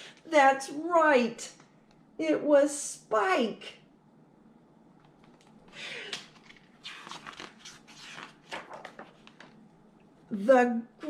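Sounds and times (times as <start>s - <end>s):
paper rustling and crinkling: 6.2s - 9.6s.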